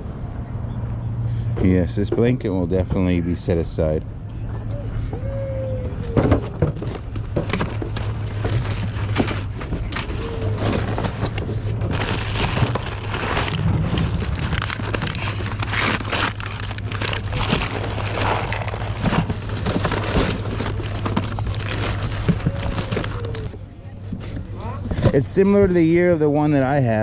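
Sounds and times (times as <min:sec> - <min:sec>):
knocks and clatters: 0:06.2 - 0:23.5
bags and fabric rustling: 0:06.7 - 0:23.6.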